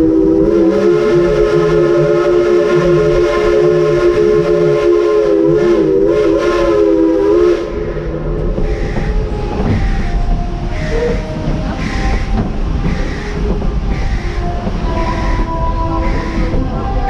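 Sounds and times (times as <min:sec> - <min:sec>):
steam locomotive chime whistle: 0:00.0 - 0:07.9, 0:08.9 - 0:17.0
low rhythmic train pulse: 0:00.0 - 0:17.0.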